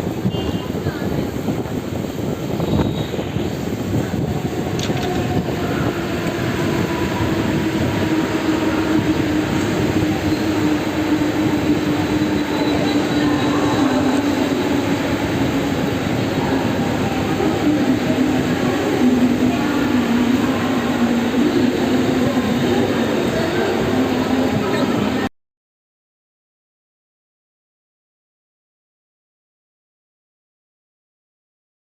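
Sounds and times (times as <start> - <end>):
train droning tone: 0.0 - 25.3
train rail noise: 0.0 - 25.3.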